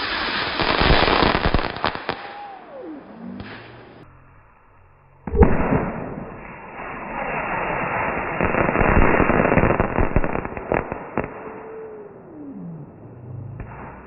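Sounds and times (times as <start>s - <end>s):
firework crackle of small pops: 0.0s - 2.5s, 5.3s - 11.7s
firework bang: 5.3s - 11.6s.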